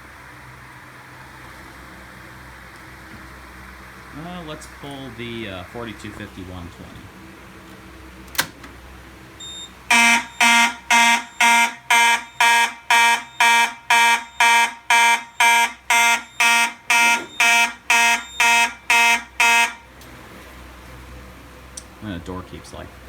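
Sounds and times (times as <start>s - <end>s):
fire alarm pull station click: 8.2s - 8.8s, 9.4s - 20.1s
pulsing fire alarm horn: 9.4s - 20.0s.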